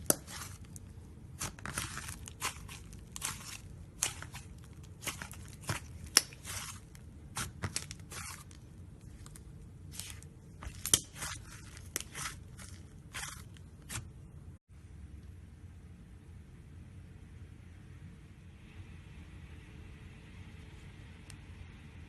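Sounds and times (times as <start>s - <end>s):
slime crackling and crunching: 0.0s - 14.1s.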